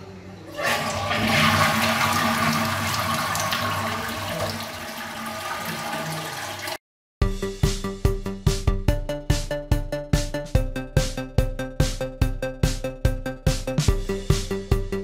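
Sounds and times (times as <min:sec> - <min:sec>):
toilet flushing: 0:00.5 - 0:06.8
electronic music with a beat: 0:07.2 - 0:15.0.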